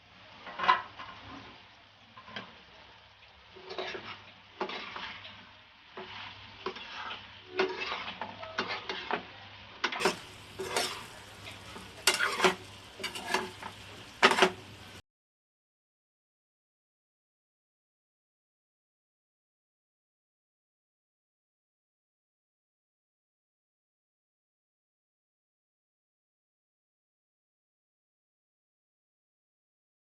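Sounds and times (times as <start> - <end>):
faint sizzle: 0.0 - 15.0
spatula scraping metal pan: 3.5 - 9.3, 9.9 - 15.0.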